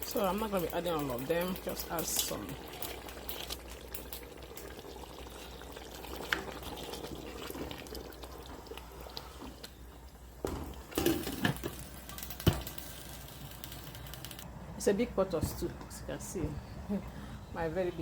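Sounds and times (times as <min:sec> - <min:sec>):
stew bubbling in pot: 0:00.0 - 0:14.2.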